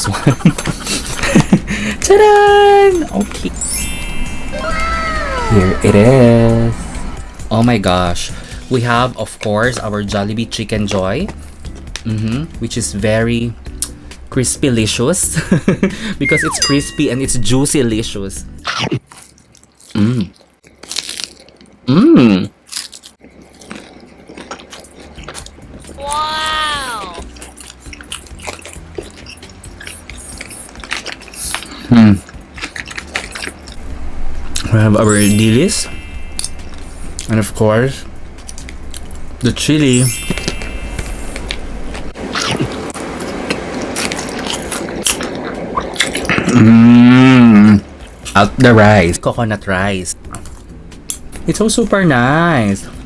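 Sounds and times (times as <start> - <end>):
crunching fried chicken: 18.8 - 33.8, 42.2 - 47.4
person humming: 26.0 - 27.3
person's drawn-out vocal sound: 26.0 - 27.3.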